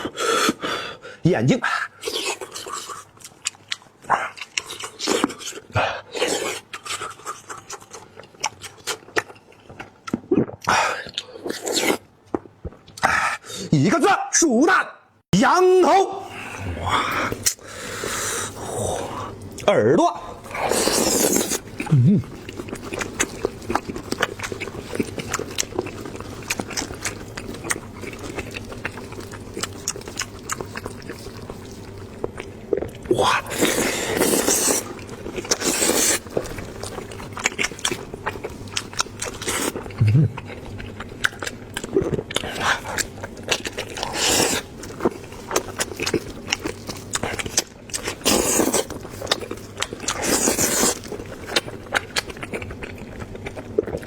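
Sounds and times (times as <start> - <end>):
wet chewing and lip-smacking: 2.0 - 13.2, 20.5 - 54.0
slurping: 20.3 - 52.4.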